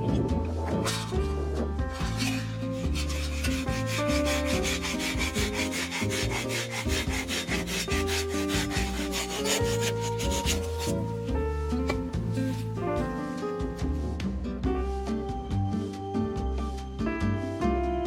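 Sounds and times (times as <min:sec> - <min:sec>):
fast scraping rhythm: 0:00.0 - 0:14.1
background music with bass: 0:00.0 - 0:18.0.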